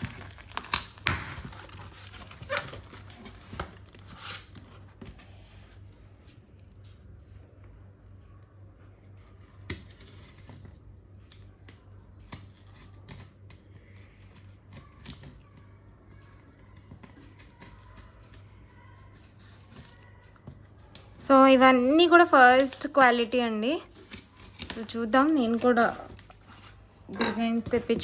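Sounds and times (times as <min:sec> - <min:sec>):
packaging being cut and opened: 0:00.0 - 0:04.7.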